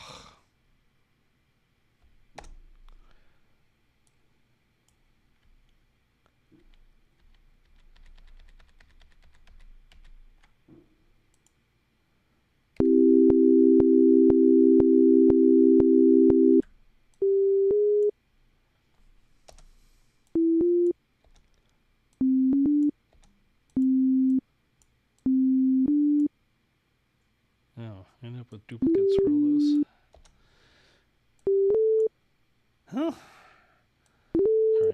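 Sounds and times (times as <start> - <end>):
synthesized pure tone chord: 12.8 - 16.6
short two-note tone phrases: 28.8 - 29.8.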